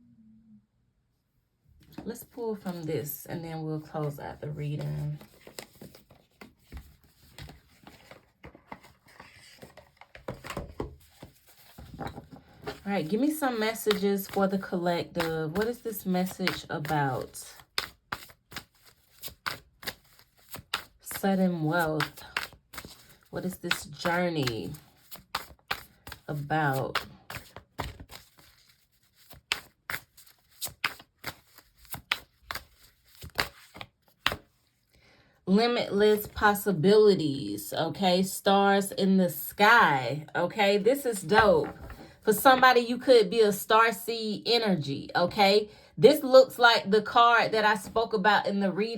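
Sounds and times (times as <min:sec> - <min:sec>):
cards tapping and knocking: 0:05.2 - 0:12.8, 0:22.0 - 0:34.5.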